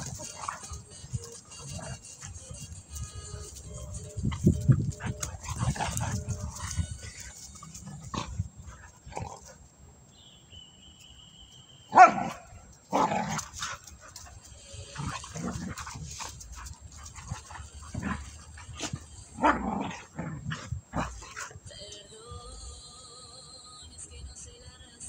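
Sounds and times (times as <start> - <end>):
dog barking: 11.9 - 12.4.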